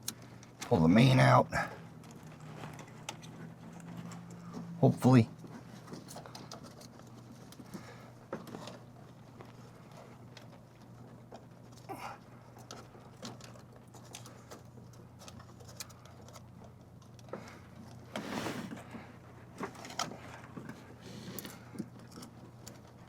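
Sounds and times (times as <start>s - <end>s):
scraping rustle: 0.6s - 4.8s, 17.9s - 22.9s.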